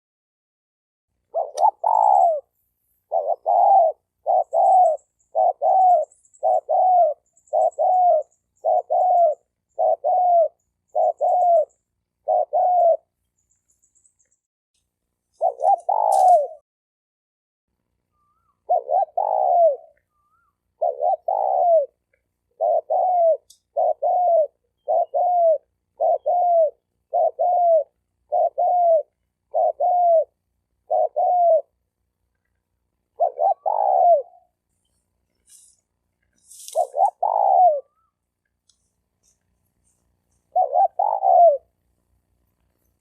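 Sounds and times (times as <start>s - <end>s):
dove cooing: 1.2s - 13.2s, 15.4s - 16.6s, 18.1s - 31.9s, 32.9s - 34.6s, 36.4s - 38.2s, 40.0s - 41.8s.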